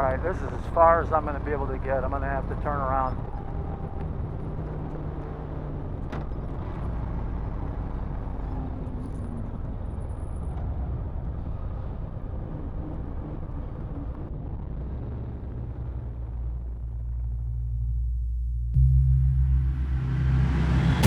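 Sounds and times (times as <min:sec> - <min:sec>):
motorcycle engine rumbling: 0:00.0 - 0:06.6, 0:15.3 - 0:21.0.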